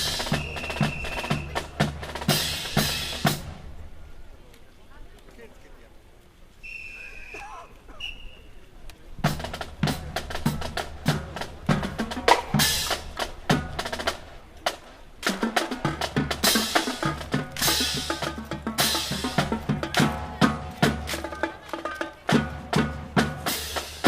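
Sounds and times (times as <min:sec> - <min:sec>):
drum-heavy percussion music: 0:00.0 - 0:03.7, 0:09.2 - 0:24.0
high whistle-like tones: 0:00.2 - 0:01.7, 0:06.6 - 0:08.7.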